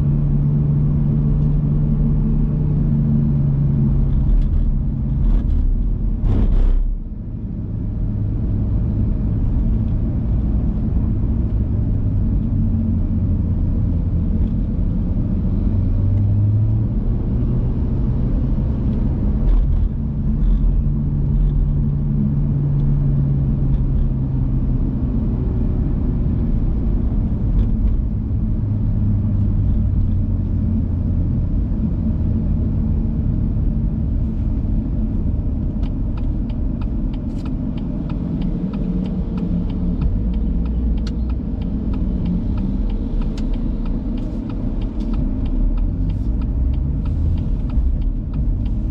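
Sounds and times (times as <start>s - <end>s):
car engine running: 26.6s - 48.9s.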